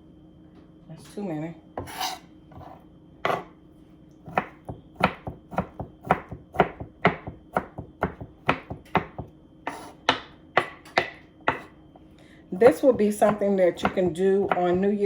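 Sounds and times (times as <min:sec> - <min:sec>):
knife chopping on cutting board: 0:01.8 - 0:03.5, 0:04.2 - 0:11.8, 0:12.6 - 0:15.0.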